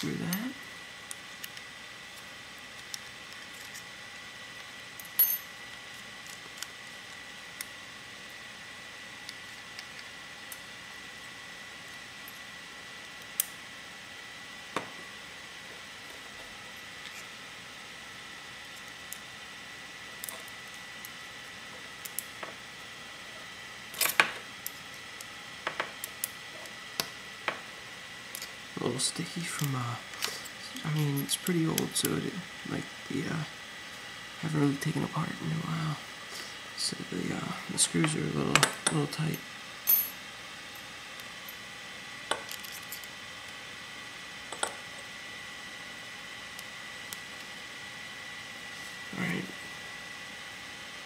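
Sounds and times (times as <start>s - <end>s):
thin high whine: 44.0s - 51.0s.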